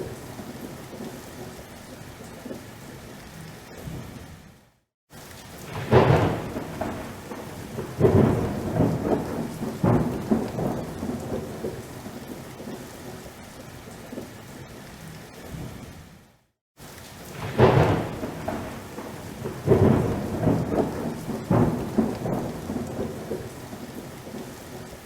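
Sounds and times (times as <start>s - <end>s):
steady rain: 0.0s - 25.0s
thunder cracks and rumble: 5.6s - 12.0s, 17.3s - 24.9s.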